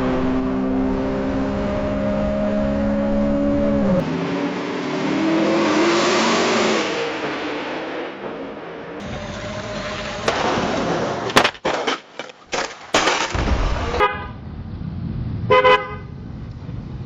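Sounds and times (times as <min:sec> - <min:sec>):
engine and tyre noise: 0:00.0 - 0:17.0
car crash impacts: 0:09.2 - 0:14.3
car horn: 0:13.9 - 0:14.4, 0:15.5 - 0:16.2.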